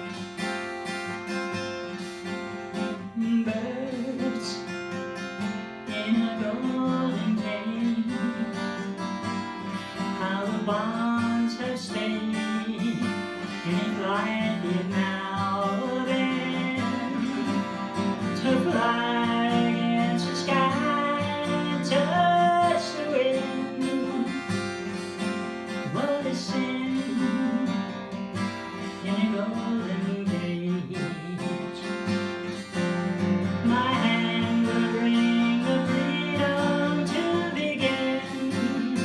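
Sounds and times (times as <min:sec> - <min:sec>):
acoustic guitar strumming: 0:00.0 - 0:39.0
person singing: 0:02.7 - 0:05.0, 0:05.8 - 0:39.0.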